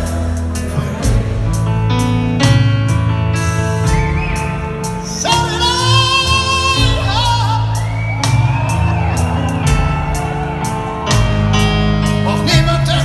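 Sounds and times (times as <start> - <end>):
live band playing ballad: 0.0 - 13.0.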